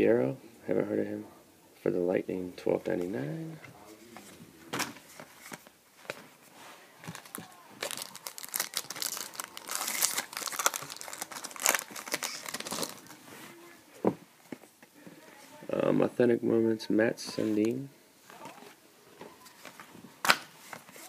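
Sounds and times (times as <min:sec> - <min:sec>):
wrapper being torn and crinkled: 0:07.2 - 0:13.2.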